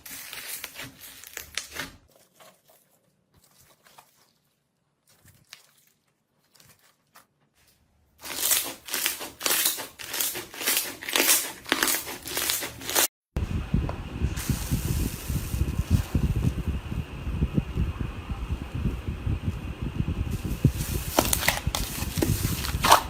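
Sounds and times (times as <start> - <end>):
low rumbling noise: 13.4 - 23.0.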